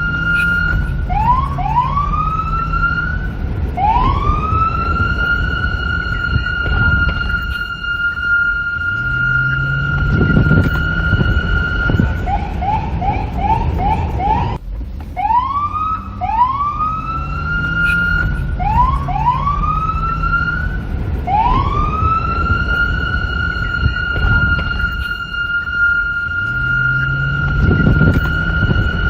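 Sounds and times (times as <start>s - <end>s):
electronic police siren: 0.0s - 14.6s, 15.2s - 29.0s
low rumble: 0.0s - 29.0s.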